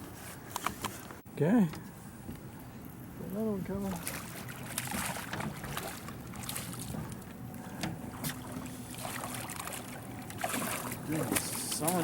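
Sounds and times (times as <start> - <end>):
light knocks on boat: 6.8 - 8.6.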